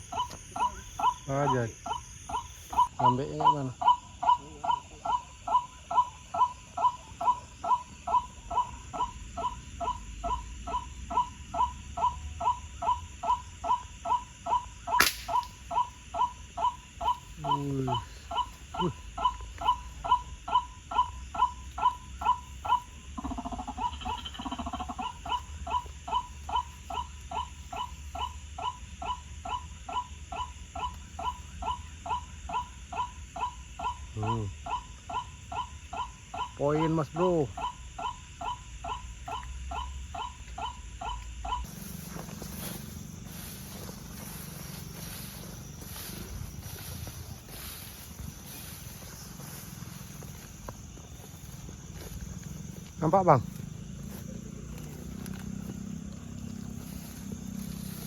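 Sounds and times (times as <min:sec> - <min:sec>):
waterhen calls: 0:00.0 - 0:34.4, 0:35.1 - 0:54.2
sharp crack: 0:15.0 - 0:15.8.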